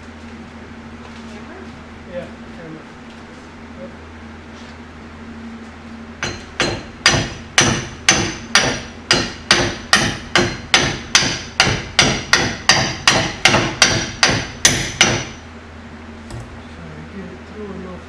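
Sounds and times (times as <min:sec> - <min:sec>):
hammer striking metal: 0:06.2 - 0:15.4.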